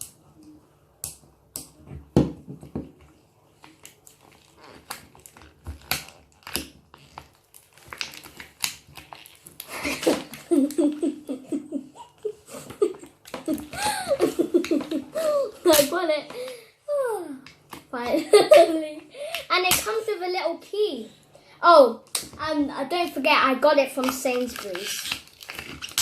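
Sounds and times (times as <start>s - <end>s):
plastic packaging crackling: 3.5s - 11.3s, 23.8s - 26.0s
child giggling: 9.7s - 16.3s, 18.0s - 19.4s.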